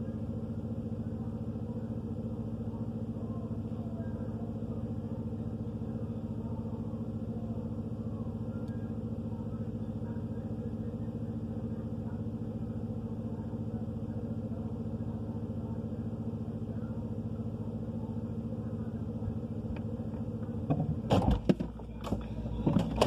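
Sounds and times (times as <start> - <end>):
refrigerator compressor humming: 0.0 - 23.0
sharp clunks and knocks: 20.6 - 23.0.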